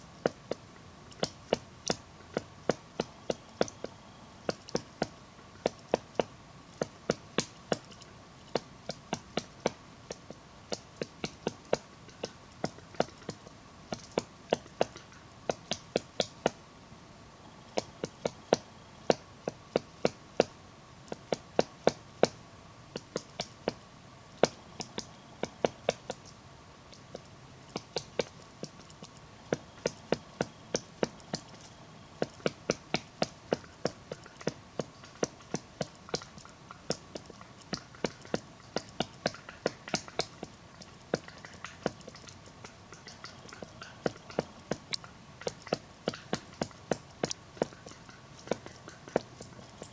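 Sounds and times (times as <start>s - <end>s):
woodpecker pecking at wood: 27.0s - 49.9s.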